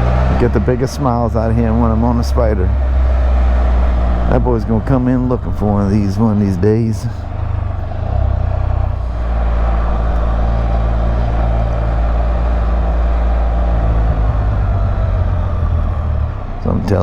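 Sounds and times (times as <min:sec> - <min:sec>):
three-wheeler engine running: 0:00.0 - 0:17.0
wind and road noise: 0:00.0 - 0:17.0.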